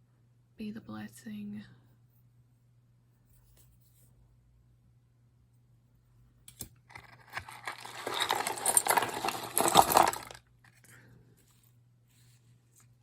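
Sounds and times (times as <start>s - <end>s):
jewelry clinking and rustling: 6.9s - 10.8s.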